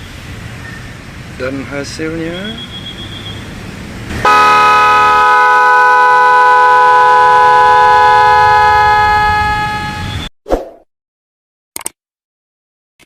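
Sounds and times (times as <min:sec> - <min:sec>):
electric horn continuous blast: 0:04.1 - 0:10.2.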